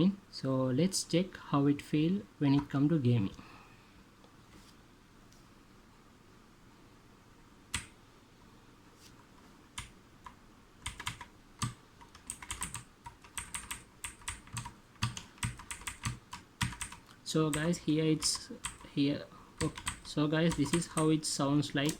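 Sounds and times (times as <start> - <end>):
mechanical keyboard clicking: 9.8 - 18.8, 19.6 - 21.1.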